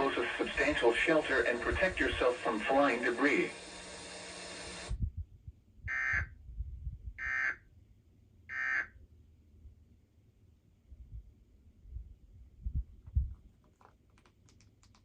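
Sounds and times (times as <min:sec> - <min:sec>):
steady hiss: 0:00.0 - 0:04.9
short buzzing data tones: 0:05.9 - 0:06.3.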